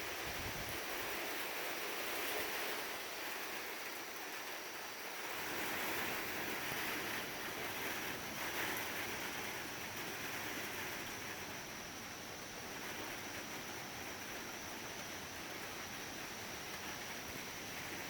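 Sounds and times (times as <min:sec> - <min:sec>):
gusty wind: 0:00.0 - 0:01.2
rain: 0:00.0 - 0:18.0.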